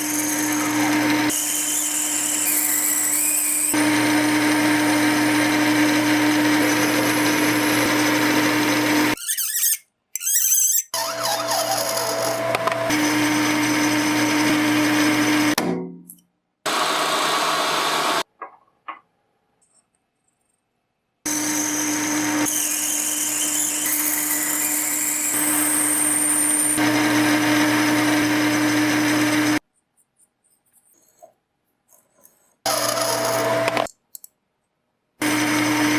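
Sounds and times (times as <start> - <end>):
electric power tool running: 0.0 - 9.2, 11.0 - 15.6, 16.7 - 18.2, 21.3 - 29.6, 32.7 - 33.9, 35.2 - 35.9.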